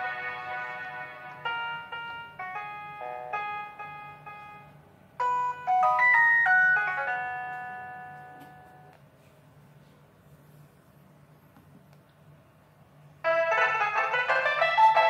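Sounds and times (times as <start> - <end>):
synthesized ringtone melody: 0.0 - 8.9, 13.2 - 15.0.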